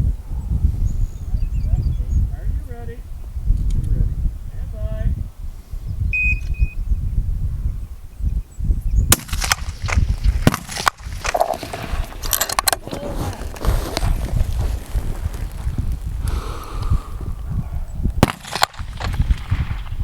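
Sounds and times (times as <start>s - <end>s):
low wind rumble on microphone: 0.0s - 20.0s
rifle shots: 9.1s - 11.6s, 18.2s - 20.0s.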